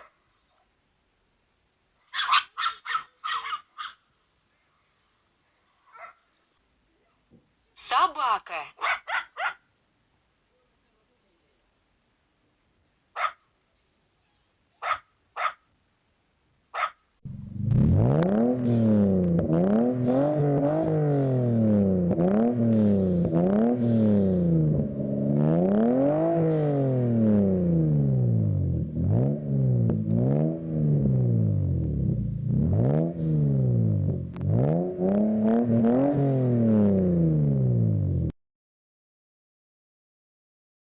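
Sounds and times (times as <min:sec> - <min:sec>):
dog barking: 0:00.0 - 0:00.7, 0:02.1 - 0:04.0, 0:05.8 - 0:06.3, 0:08.8 - 0:09.7, 0:13.2 - 0:13.5, 0:14.8 - 0:15.7, 0:16.7 - 0:17.0
loud pitched drone: 0:17.3 - 0:21.0, 0:22.8 - 0:27.7.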